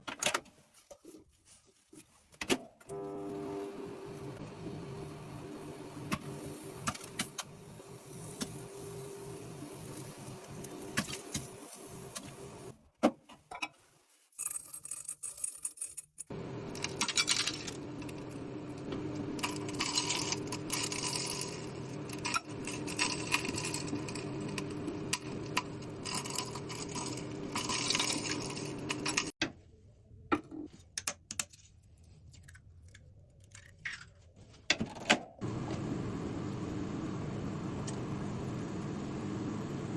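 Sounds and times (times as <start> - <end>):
microwave oven humming: 2.9 - 12.7, 16.3 - 29.3, 35.4 - 39.9.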